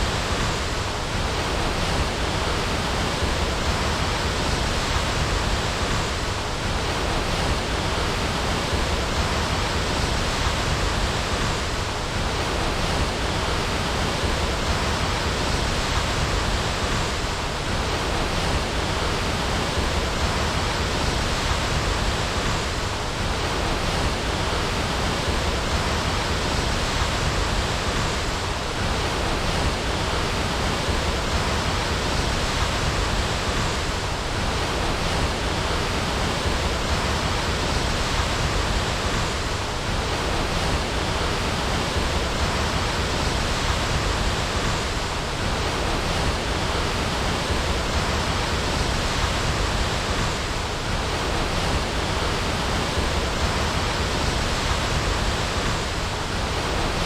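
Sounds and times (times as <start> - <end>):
waterfall rushing: 0.0 - 57.0.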